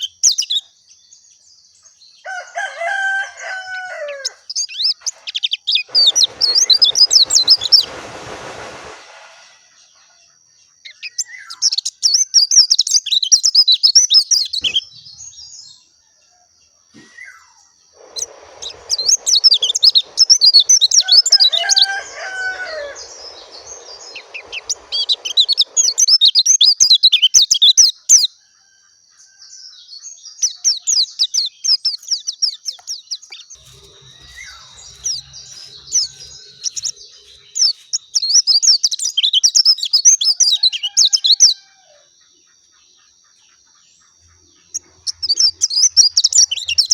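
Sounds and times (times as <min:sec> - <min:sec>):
faint rushing noise: 0:05.0 - 0:09.9, 0:18.0 - 0:26.2, 0:33.6 - 0:38.0
bird twittering warble: 0:18.0 - 0:26.2, 0:33.4 - 0:38.7.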